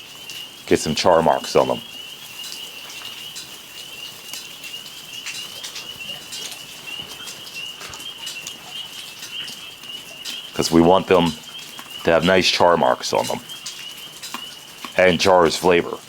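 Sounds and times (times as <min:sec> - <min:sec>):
faint clicks and crackles: 0:02.2 - 0:12.1, 0:13.0 - 0:15.1.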